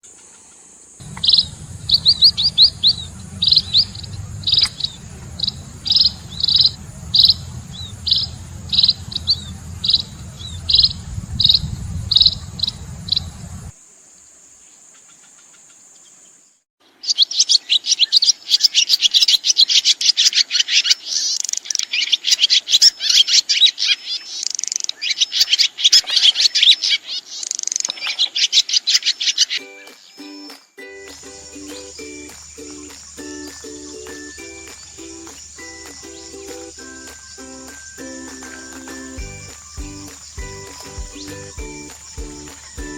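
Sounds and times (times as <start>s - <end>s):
fast bird chatter: 1.0s - 13.7s, 31.1s - 42.9s
steady high tone: 31.0s - 42.9s.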